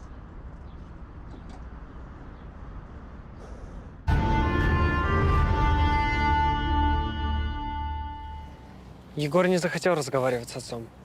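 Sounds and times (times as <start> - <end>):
tense drama underscore: 4.0 - 8.7.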